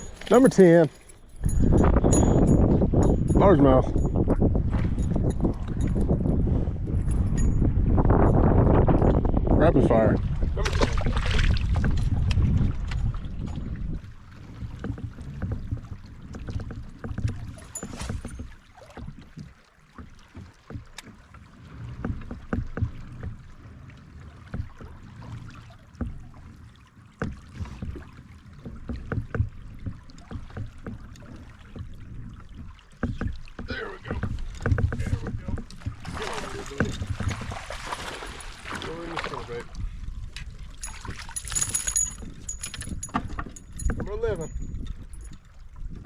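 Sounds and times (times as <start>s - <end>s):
wind rumbling on microphone: 0.0s - 46.0s
light clicks and knocks: 14.4s - 23.6s, 24.4s - 37.5s, 40.3s - 45.5s.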